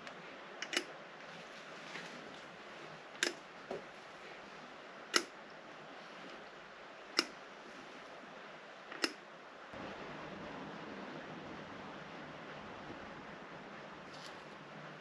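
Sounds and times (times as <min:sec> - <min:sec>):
faint steady hiss: 0:00.0 - 0:15.0
wrench clicking: 0:00.6 - 0:00.9.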